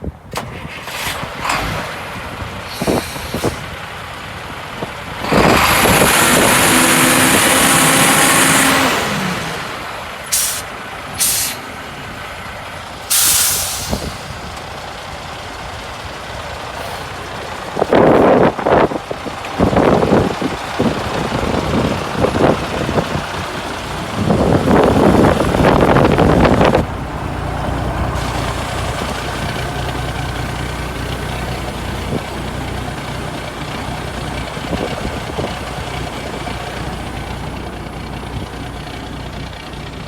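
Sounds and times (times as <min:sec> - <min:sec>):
truck engine running: 0:00.1 - 0:40.0
compressed air hissing: 0:02.7 - 0:03.6, 0:10.3 - 0:11.7, 0:13.1 - 0:14.5, 0:16.7 - 0:17.3.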